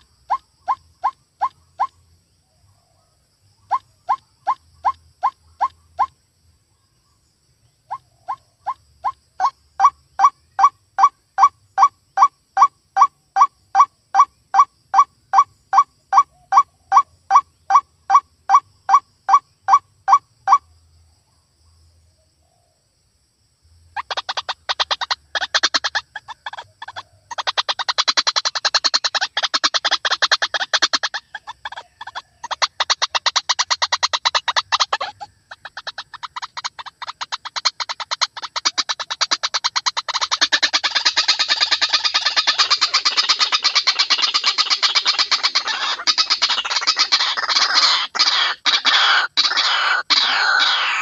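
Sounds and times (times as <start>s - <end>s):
bird short repeated calls: 3.6s - 6.2s, 7.9s - 20.7s, 24.0s - 51.0s
bird harsh chattering: 7.9s - 20.6s, 24.0s - 51.0s.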